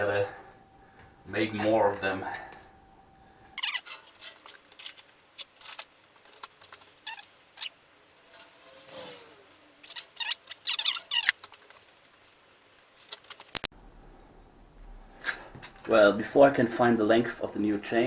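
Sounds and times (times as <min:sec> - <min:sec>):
brief squeak: 0:03.6 - 0:05.0, 0:07.0 - 0:11.4
bicycle chain clinking and rattling: 0:03.6 - 0:13.7.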